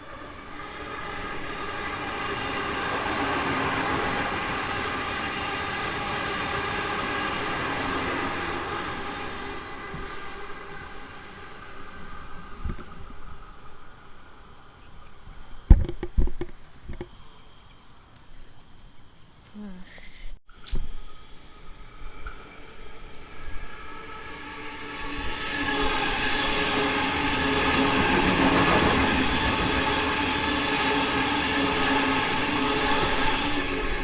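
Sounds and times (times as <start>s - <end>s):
electric train passing: 0.0s - 18.2s, 20.9s - 34.0s.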